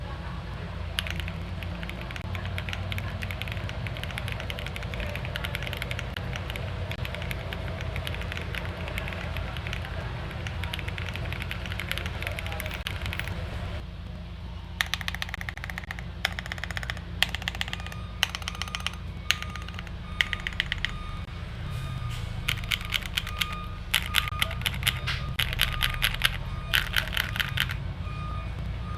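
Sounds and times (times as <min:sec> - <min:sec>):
mechanical keyboard typing: 0:01.0 - 0:13.4, 0:14.8 - 0:21.3, 0:22.5 - 0:27.8.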